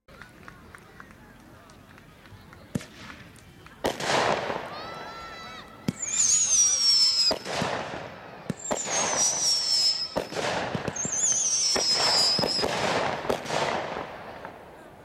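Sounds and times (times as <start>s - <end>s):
fireworks crackling hiss: 2.6s - 15.0s
high falling fireworks whistles: 2.8s - 14.6s
fireworks shells bursting: 5.8s - 14.7s.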